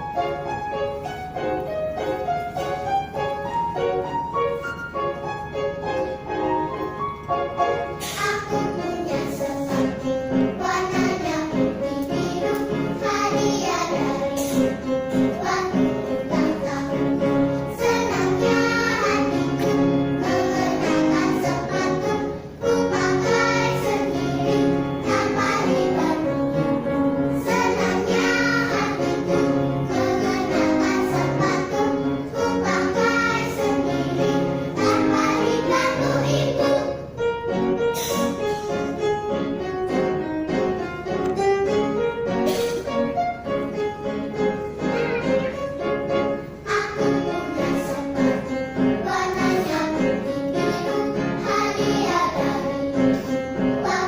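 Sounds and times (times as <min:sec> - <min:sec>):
musical accompaniment: 0:00.0 - 0:54.0
children's choir singing: 0:07.5 - 0:54.0.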